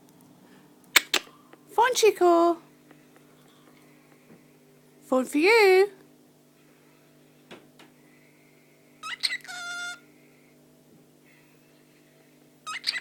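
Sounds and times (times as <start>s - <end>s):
bird rising chirp: 9.0s - 10.0s.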